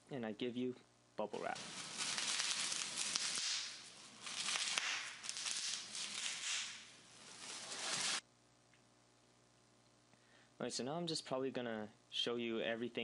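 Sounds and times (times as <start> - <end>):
bubble wrap crinkling and clicking: 1.5 - 8.2.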